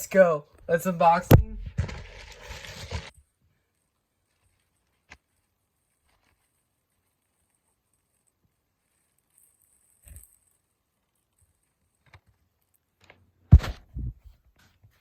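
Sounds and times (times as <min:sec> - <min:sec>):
thud: 0:01.3 - 0:03.1, 0:13.5 - 0:14.3.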